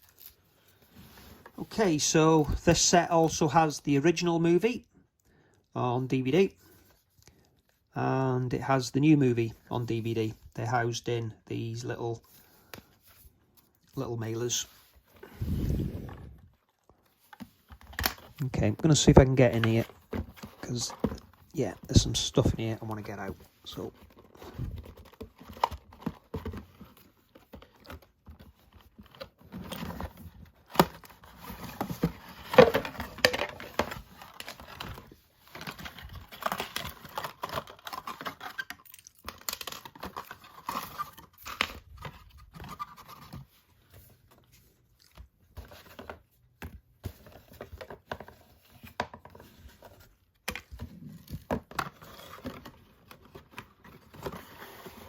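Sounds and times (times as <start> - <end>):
packaging rustling and tearing: 12.4 - 55.0.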